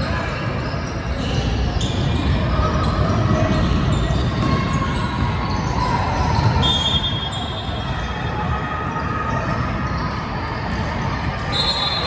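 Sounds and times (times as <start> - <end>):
crowd noise: 0.0 - 12.0
sneaker squeak on floor: 0.1 - 8.1, 11.3 - 12.0.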